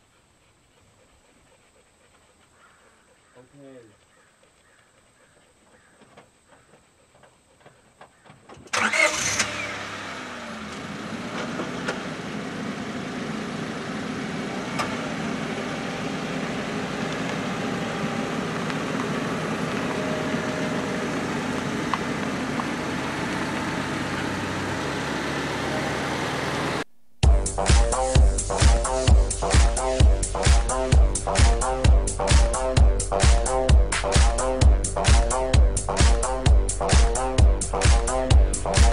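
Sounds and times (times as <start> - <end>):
car engine starting and running: 8.1 - 38.9.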